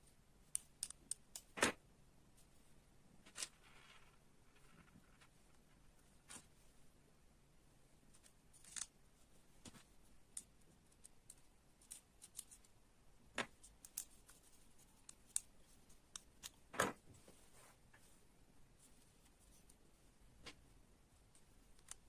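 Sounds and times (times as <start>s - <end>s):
light clicks and taps of small parts: 0.4s - 1.7s, 8.1s - 9.0s, 9.6s - 12.8s, 13.4s - 16.8s, 20.4s - 22.0s.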